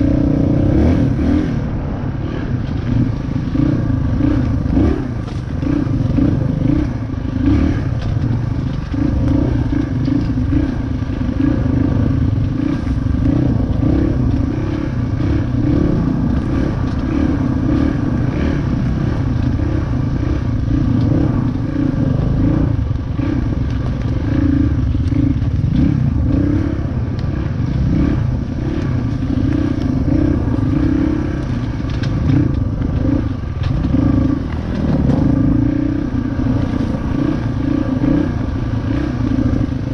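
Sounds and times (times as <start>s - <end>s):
dirt bike engine running: 0.0s - 39.9s
clatter and knocks: 31.4s - 35.2s.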